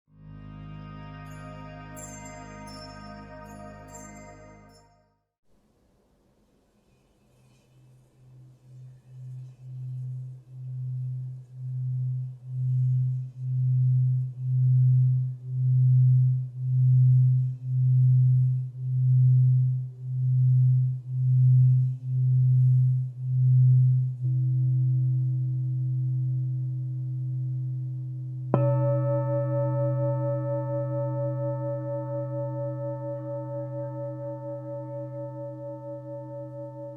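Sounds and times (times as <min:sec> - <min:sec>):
singing bowl low pulsing tone: 0:00.1 - 0:05.2, 0:08.8 - 0:36.9
singing bowl strike ringing: 0:01.1 - 0:04.8, 0:28.6 - 0:36.9.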